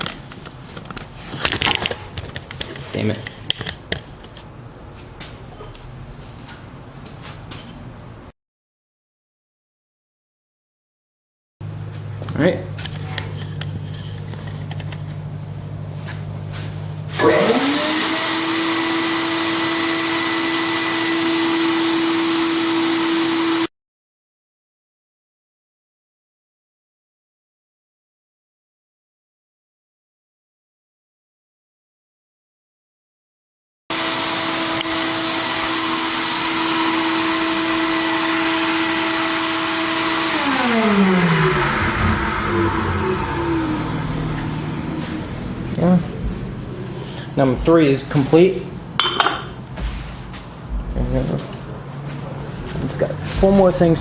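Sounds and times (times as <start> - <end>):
low machine hum: 11.6 - 17.5, 40.8 - 54.0
steady hum: 40.9 - 48.8.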